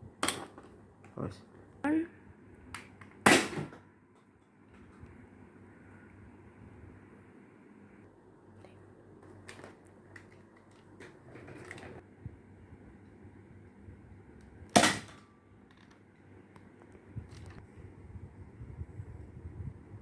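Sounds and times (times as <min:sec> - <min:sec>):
toy dart blaster firing: 0:14.8 - 0:15.2.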